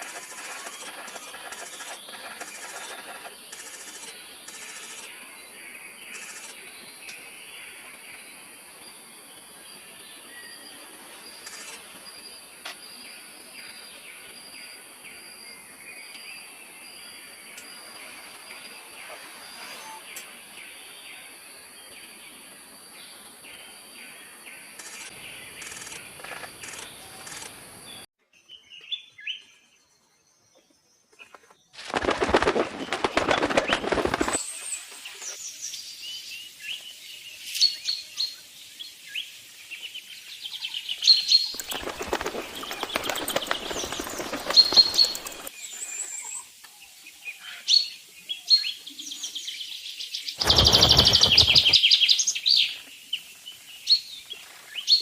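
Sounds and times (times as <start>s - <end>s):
small birds chirping: 0.0s - 5.1s, 32.3s - 55.0s
birds chirping: 31.3s - 35.4s, 40.4s - 46.3s, 50.3s - 55.0s
insects trilling: 41.5s - 46.4s, 50.4s - 52.0s.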